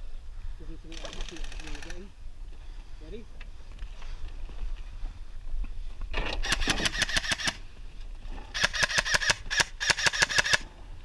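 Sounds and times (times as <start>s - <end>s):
airsoft rifle automatic fire: 6.4s - 7.6s, 8.6s - 10.6s.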